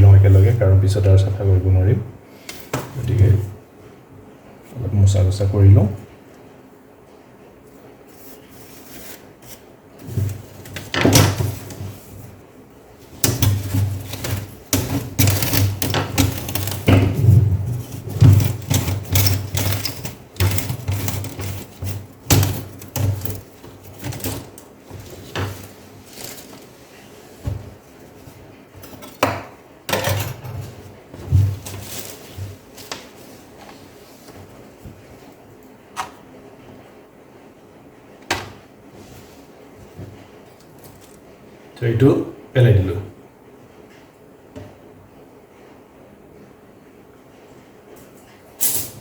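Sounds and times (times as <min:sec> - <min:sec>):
plastic chassis knocks: 0:13.2 - 0:25.6.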